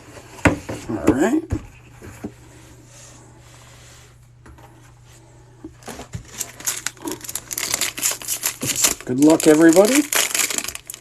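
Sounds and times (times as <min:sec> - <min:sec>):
steady low hum: 0:00.0 - 0:09.2
card packaging crinkling: 0:05.8 - 0:11.0.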